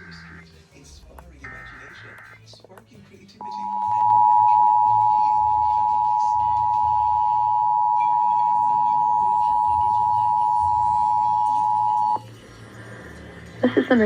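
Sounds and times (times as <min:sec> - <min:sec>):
two-tone alert signal: 0:03.4 - 0:12.2.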